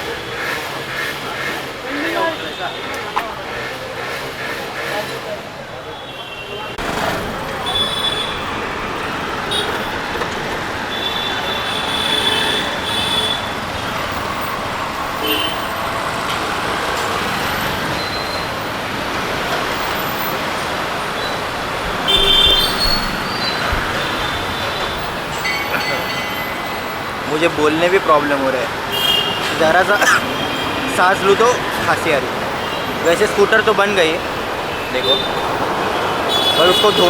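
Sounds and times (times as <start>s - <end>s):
vehicle horns tooting: 0.0s - 5.2s, 5.8s - 16.4s, 19.5s - 37.0s
street traffic noise: 0.0s - 37.0s.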